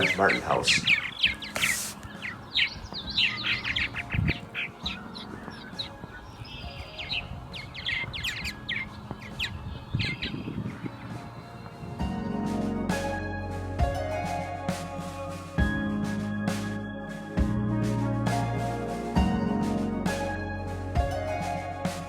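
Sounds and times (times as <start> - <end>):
birds chattering: 0.0 - 12.4.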